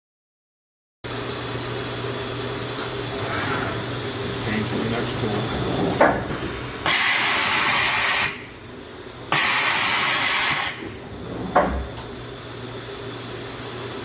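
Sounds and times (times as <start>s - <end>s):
machine low hum: 1.1s - 14.0s
compressed air hiss: 2.9s - 8.6s, 9.3s - 11.0s.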